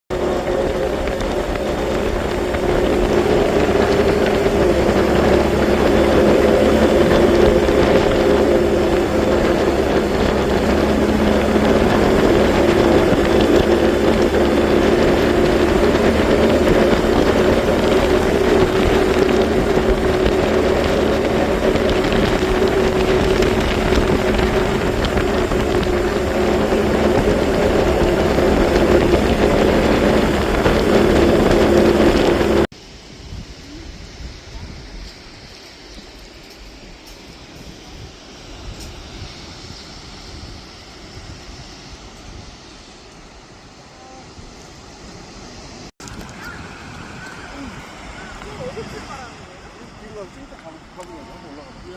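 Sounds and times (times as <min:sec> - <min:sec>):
tractor engine droning: 0:00.0 - 0:34.1.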